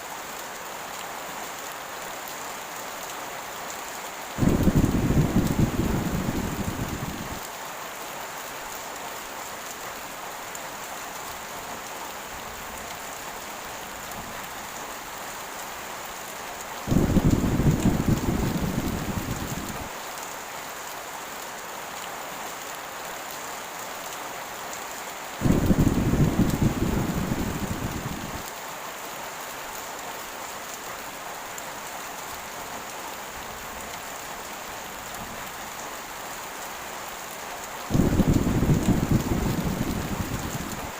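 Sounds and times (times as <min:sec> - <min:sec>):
heavy rain hissing: 0:04.1 - 0:08.5, 0:09.2 - 0:20.2, 0:25.2 - 0:29.3, 0:33.2 - 0:40.9
thunder rolling: 0:04.4 - 0:07.4, 0:16.9 - 0:19.9, 0:25.4 - 0:28.4, 0:37.9 - 0:40.9.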